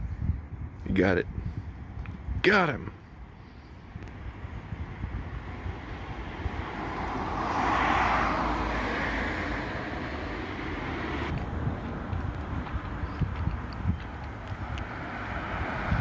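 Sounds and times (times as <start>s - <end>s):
vehicle passing: 4.3s - 16.0s
steady low rumble: 9.4s - 16.0s.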